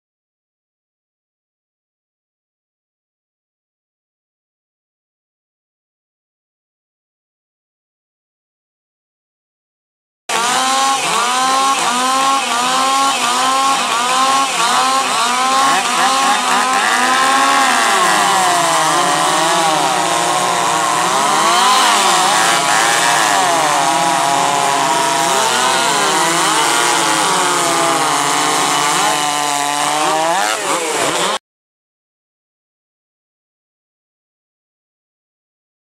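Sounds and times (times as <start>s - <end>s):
chainsaws revving: 10.3s - 31.4s.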